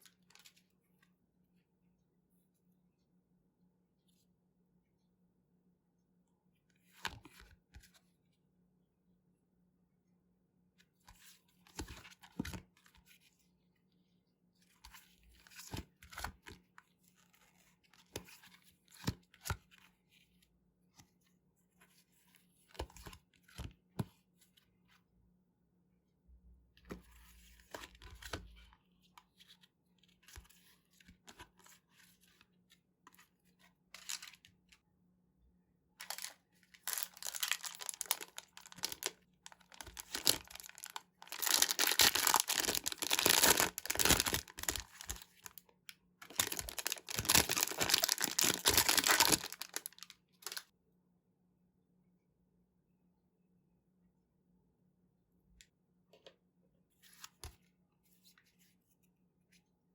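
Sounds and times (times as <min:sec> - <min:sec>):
card packet wrappers tearing: 0:36.0 - 0:45.6, 0:46.2 - 0:50.6.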